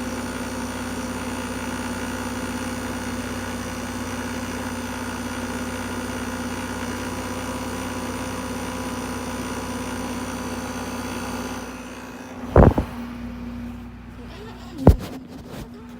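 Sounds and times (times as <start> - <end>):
steady mechanical hum: 7.0 - 15.9
sharp knock: 12.5 - 13.0.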